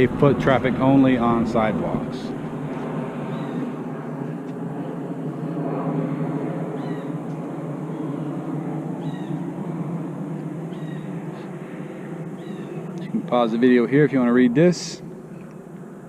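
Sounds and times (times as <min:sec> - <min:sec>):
low background rumble: 0:00.0 - 0:16.0
bird mewing calls: 0:00.8 - 0:03.9, 0:06.6 - 0:13.8.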